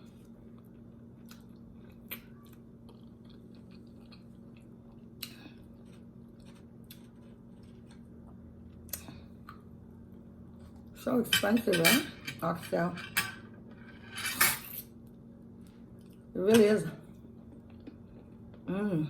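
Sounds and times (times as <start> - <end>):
person chewing: 0.0 - 9.6, 17.4 - 18.6
steady low hum: 0.0 - 19.0.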